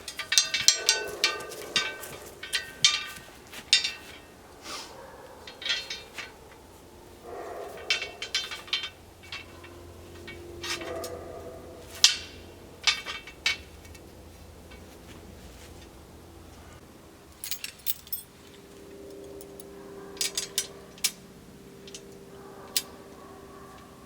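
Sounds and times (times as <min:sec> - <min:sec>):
chains clinking and rattling: 0:00.0 - 0:04.3, 0:05.5 - 0:06.4, 0:17.4 - 0:18.3, 0:19.1 - 0:20.7.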